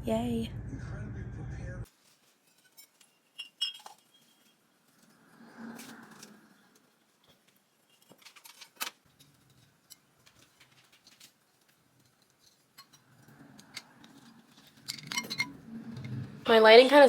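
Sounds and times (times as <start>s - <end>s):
rustling: 1.9s - 17.0s
ornaments clicking and clinking: 5.9s - 16.2s.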